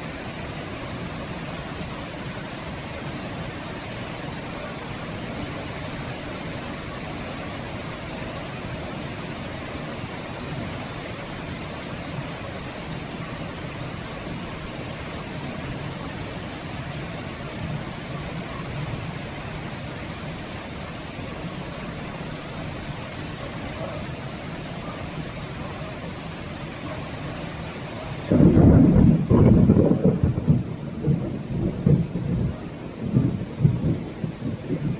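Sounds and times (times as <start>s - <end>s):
steady rain: 0.0s - 34.9s
loud thunderclap: 28.3s - 34.9s.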